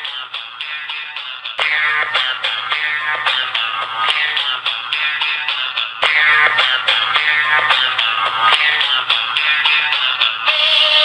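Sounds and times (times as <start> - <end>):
plucked guitar-like music: 0.0 - 11.0.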